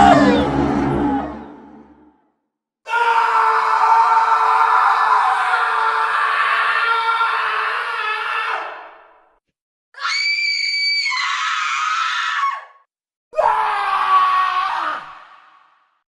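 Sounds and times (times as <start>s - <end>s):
person screaming: 13.4s - 15.2s.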